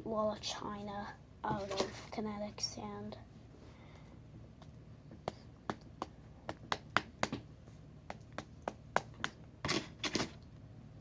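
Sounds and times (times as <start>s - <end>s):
hands patting kinetic sand: 5.2s - 10.1s.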